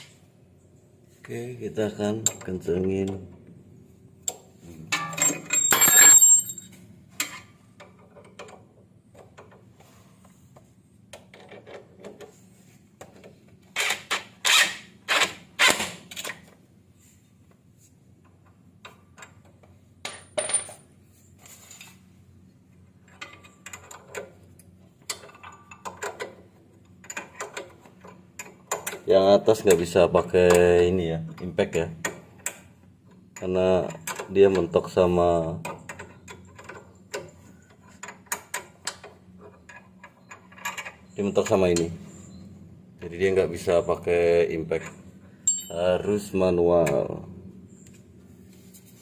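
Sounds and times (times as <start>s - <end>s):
metal tools clinking and knocking: 4.9s - 8.6s, 39.4s - 42.4s, 44.8s - 45.8s
ringing metal clank: 5.0s - 6.7s, 45.4s - 45.8s.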